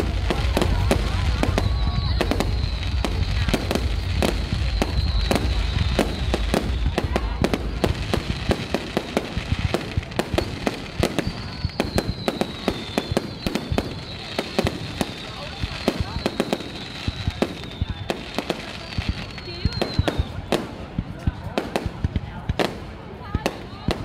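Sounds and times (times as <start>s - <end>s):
deep rumble: 0.0s - 10.1s
fireworks bangs and crackling: 0.0s - 24.0s.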